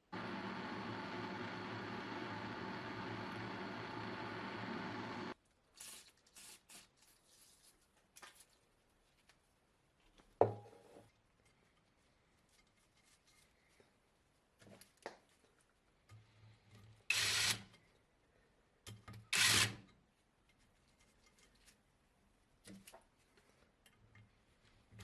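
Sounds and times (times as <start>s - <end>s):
power tool bursts: 17.1s - 17.6s, 19.4s - 19.8s.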